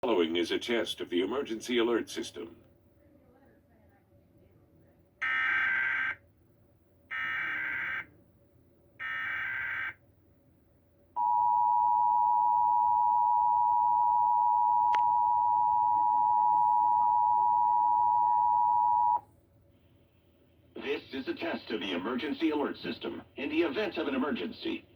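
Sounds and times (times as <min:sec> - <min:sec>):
two-tone attention signal: 0:11.2 - 0:19.2.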